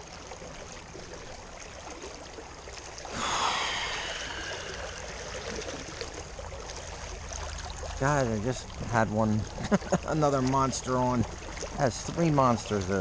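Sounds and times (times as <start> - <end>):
creek water rushing: 0.0 - 13.0
noisy burst with high falling tones: 3.1 - 5.6.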